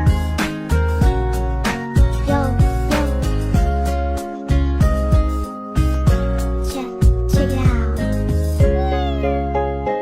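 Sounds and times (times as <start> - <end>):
background music with beat: 0.0 - 9.5.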